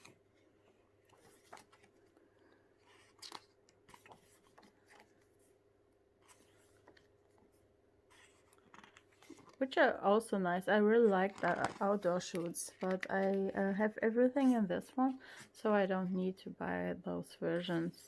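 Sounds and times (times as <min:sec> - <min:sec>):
paper pages rustling: 0:00.0 - 0:05.6, 0:06.2 - 0:09.7, 0:10.9 - 0:14.6.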